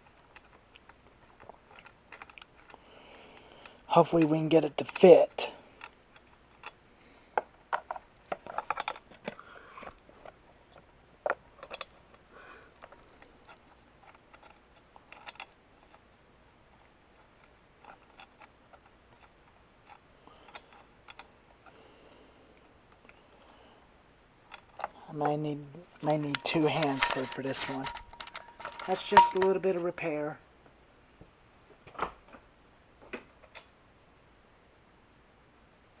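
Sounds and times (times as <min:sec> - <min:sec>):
tool clicks taps and knocks: 0:26.2 - 0:29.6.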